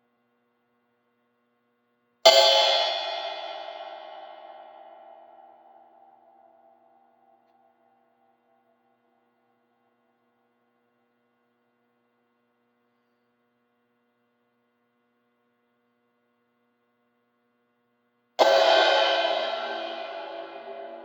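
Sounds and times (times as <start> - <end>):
faint hum of held tones: 4.9 - 19.4.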